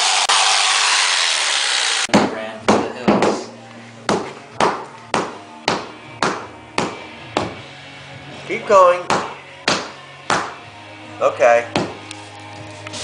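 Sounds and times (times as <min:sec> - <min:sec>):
power saw cutting: 0:00.0 - 0:02.1.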